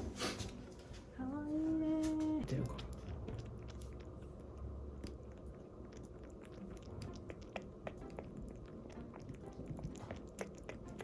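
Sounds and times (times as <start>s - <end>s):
kitten suckling from a bottle: 2.5s - 11.0s.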